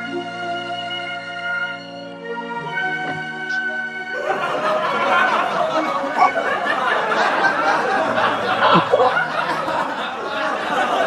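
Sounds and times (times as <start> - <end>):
music: 0.0 - 11.0
people laughing and chattering: 4.0 - 11.0.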